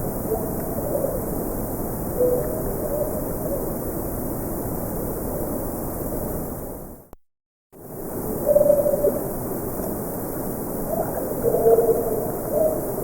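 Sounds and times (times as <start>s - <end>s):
recording hiss: 0.0s - 7.2s, 7.8s - 13.0s
faint wavering calls: 8.4s - 9.2s, 10.9s - 13.0s.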